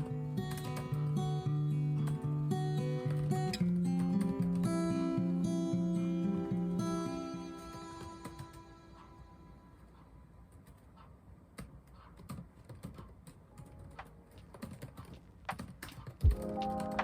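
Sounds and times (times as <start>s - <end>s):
computer keyboard typing: 8.0s - 8.6s, 10.4s - 17.0s.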